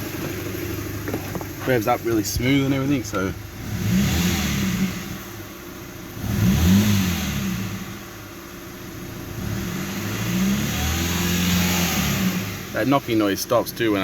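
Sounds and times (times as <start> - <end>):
engine idling with rattling knock: 0.0 - 4.0
car engine revving: 0.0 - 14.0.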